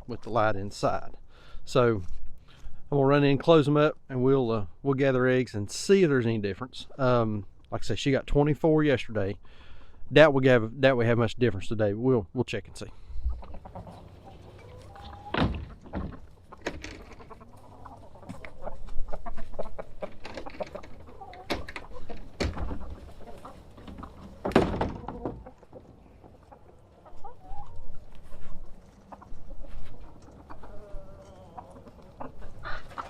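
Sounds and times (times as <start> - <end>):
chickens clucking: 12.6 - 33.0
knocks and thuds: 15.3 - 17.0, 23.9 - 25.4.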